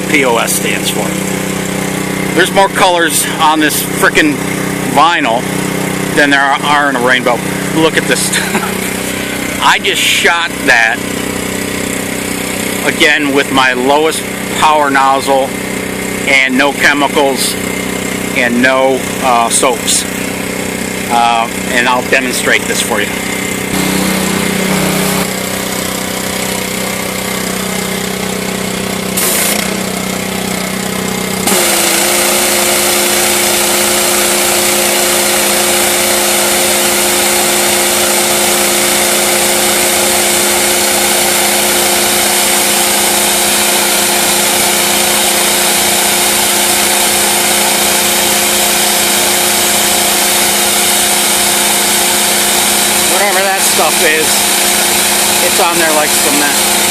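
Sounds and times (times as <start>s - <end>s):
pressure washer engine running: 0.0s - 56.9s
high-pressure water spray hissing: 29.2s - 29.7s, 31.5s - 56.9s.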